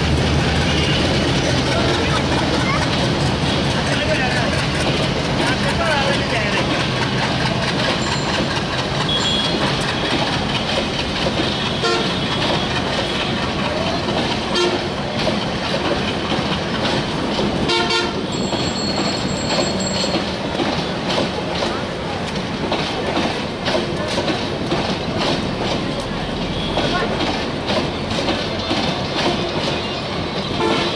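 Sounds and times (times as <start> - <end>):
train rumbling on rails: 0.0 - 30.9
people's voices: 1.0 - 11.3, 18.4 - 30.9.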